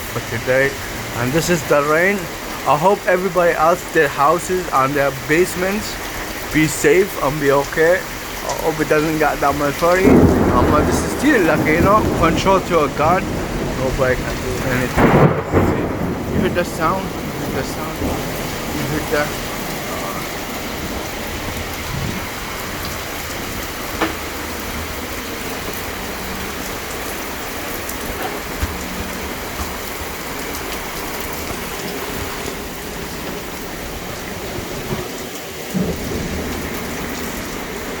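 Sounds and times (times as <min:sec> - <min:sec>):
heavy rain pouring: 0:00.0 - 0:38.0
drip and splash ticks: 0:22.6 - 0:33.5.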